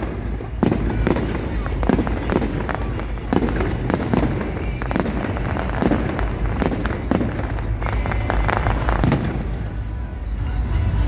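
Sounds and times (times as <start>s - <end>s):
fireworks bangs and crackles: 0.0s - 11.0s.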